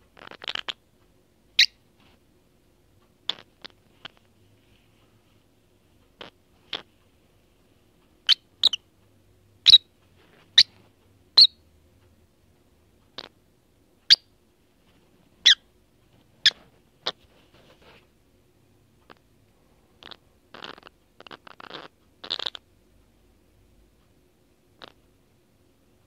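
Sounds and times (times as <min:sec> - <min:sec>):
lovebird chirping: 0:00.2 - 0:00.8, 0:01.5 - 0:01.8, 0:03.2 - 0:04.2, 0:08.2 - 0:08.8, 0:09.6 - 0:09.9, 0:10.6 - 0:10.8, 0:11.4 - 0:11.6, 0:14.1 - 0:14.3, 0:15.4 - 0:15.6, 0:20.0 - 0:22.6.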